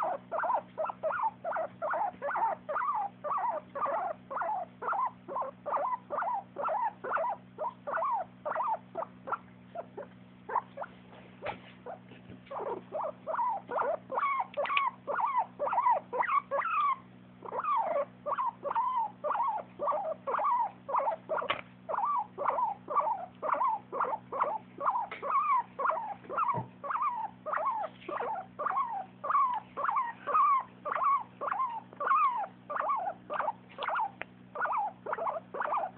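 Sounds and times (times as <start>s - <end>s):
faint steady hum: 0.0s - 35.9s
pet making squeaky calls: 0.0s - 35.9s.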